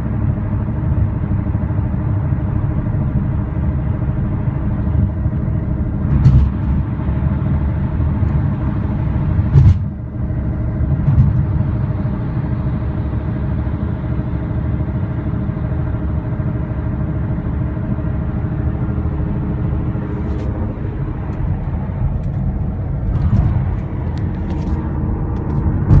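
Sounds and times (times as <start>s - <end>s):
car cruising with low rumble: 0.0s - 26.0s
droning pitched tones: 18.4s - 26.0s.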